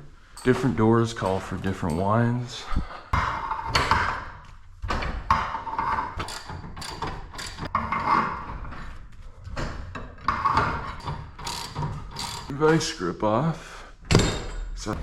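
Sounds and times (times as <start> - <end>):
spring winding knocks and clicks: 6.2 - 7.7, 11.0 - 12.5.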